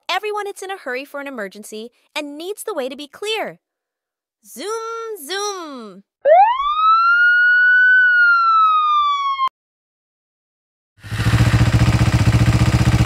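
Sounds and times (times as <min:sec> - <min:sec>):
police siren wail: 0:06.2 - 0:09.5
fast-pulsing engine buzz: 0:11.0 - 0:13.0.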